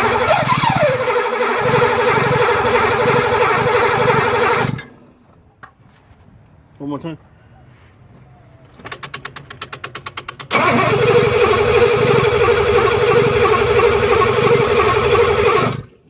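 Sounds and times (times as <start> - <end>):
car engine cranking on starter: 0.0 - 5.0, 10.3 - 16.0
car engine running loud: 10.5 - 15.8.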